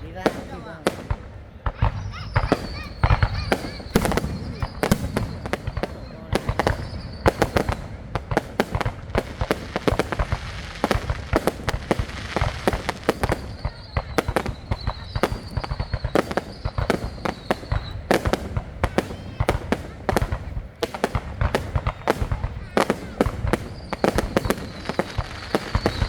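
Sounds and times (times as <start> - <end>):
fireworks bangs and pops: 0.0 - 26.0
faint high whistle: 1.9 - 7.8, 13.4 - 18.1, 23.6 - 26.0.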